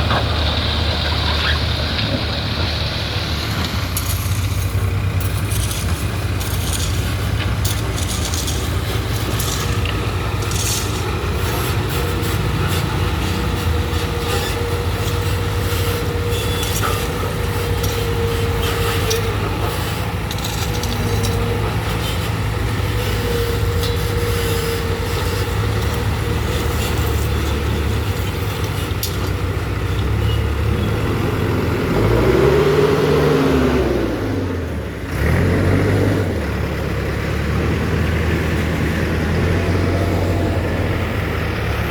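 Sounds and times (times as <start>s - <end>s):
engine revving: 0.0s - 29.4s, 30.2s - 41.9s
diesel engines running: 0.0s - 41.9s
scraping and clicking: 3.5s - 29.4s.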